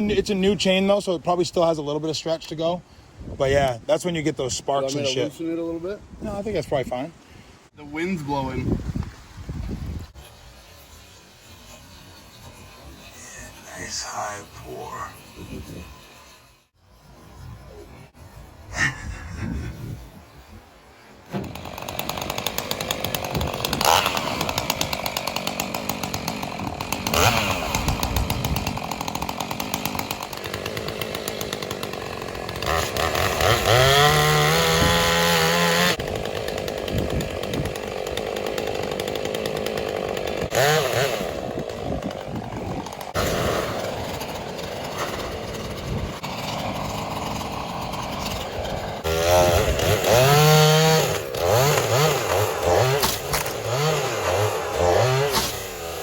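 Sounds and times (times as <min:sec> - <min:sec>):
chainsaw revving: 0:21.4 - 0:56.0.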